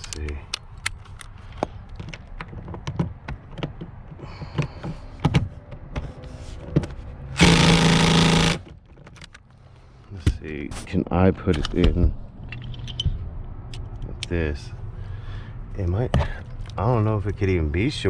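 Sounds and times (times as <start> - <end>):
power tool driving bolt: 7.4 - 8.7.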